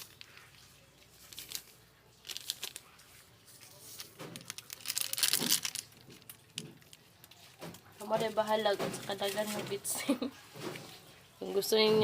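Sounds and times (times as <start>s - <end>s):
plastic packet crinkling: 0.0s - 7.5s.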